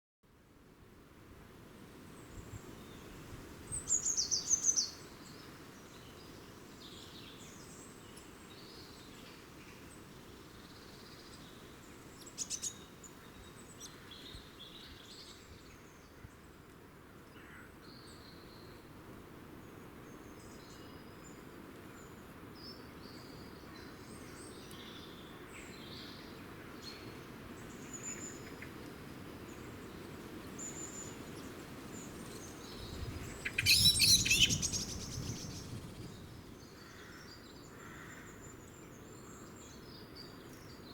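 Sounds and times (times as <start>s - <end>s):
birds chirping: 30.6s - 37.1s.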